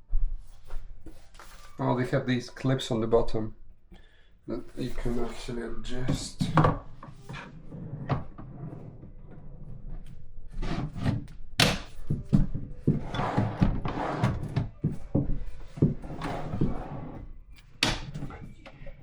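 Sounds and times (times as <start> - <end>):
panels scraping: 4.7 - 19.0.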